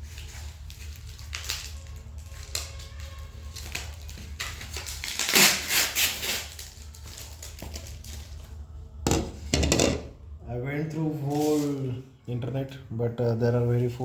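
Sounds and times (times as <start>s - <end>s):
packaging rustling: 0.0s - 8.6s.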